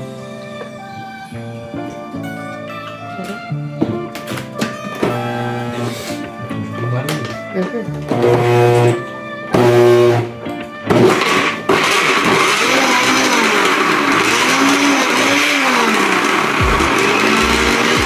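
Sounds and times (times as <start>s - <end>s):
blender motor straining: 8.1s - 9.0s, 10.9s - 18.0s.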